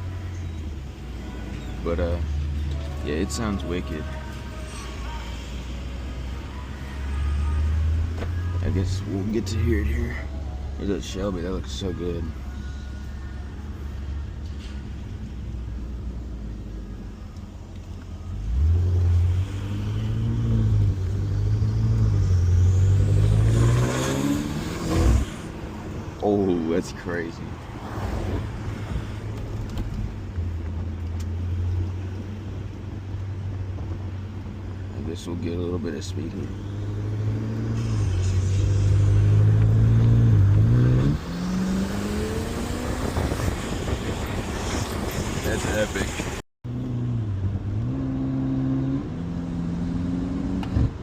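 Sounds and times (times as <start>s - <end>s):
car engine accelerating hard: 18.4s - 26.4s, 36.4s - 51.0s.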